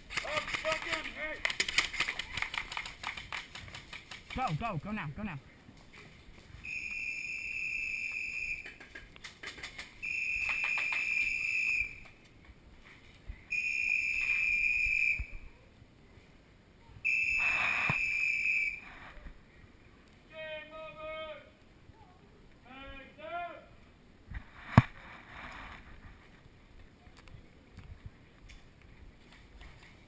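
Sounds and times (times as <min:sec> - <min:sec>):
whistle blasts: 0:06.6 - 0:08.7, 0:10.0 - 0:12.1, 0:13.5 - 0:15.4, 0:17.1 - 0:18.8.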